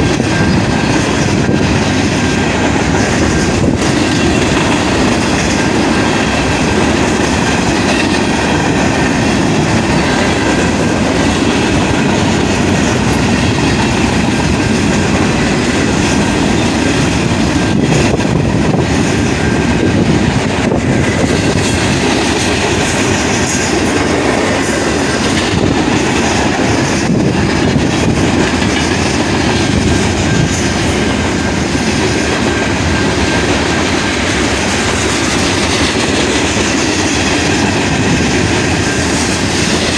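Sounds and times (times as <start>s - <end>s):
train cars rumbling on track: 0.0s - 39.9s.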